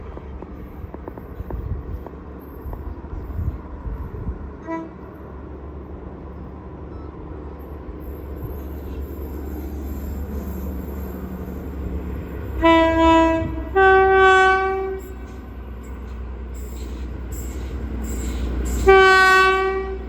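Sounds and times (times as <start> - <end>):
diesel train rumble: 0.0 - 20.0
train horn toot: 4.6 - 5.0, 12.6 - 15.4, 18.6 - 20.0.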